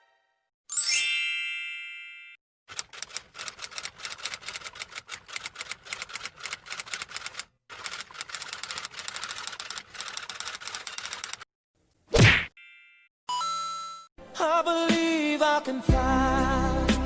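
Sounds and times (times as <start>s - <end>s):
rapid keyboard typing: 2.7s - 11.4s.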